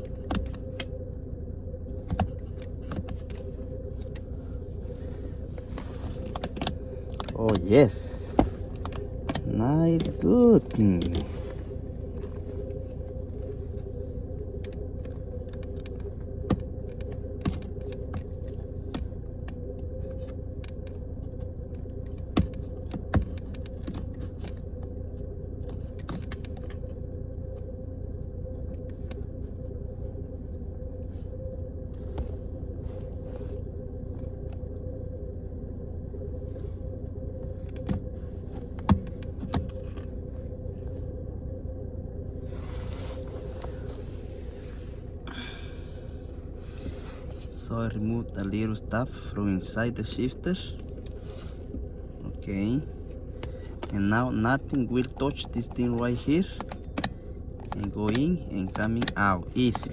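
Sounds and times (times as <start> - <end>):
low mechanical hum: 0.0 - 59.9.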